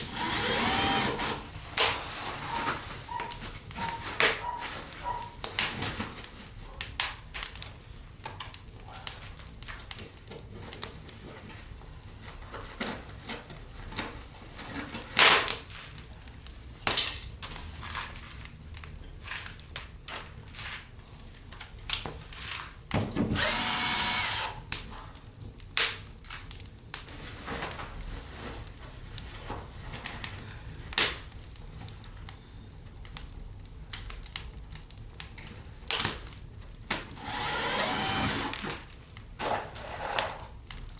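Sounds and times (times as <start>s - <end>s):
power drill running: 0.0s - 1.5s, 23.3s - 24.6s, 37.2s - 38.7s.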